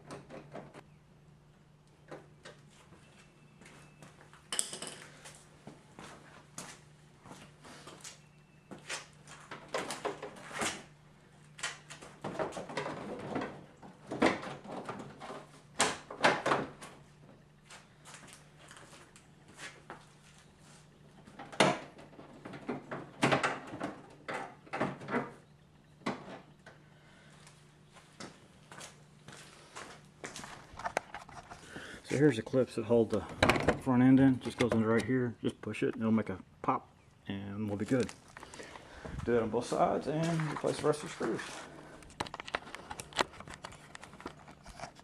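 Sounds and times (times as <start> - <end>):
car parts and tools rattling: 30.4 - 31.8, 38.0 - 45.0.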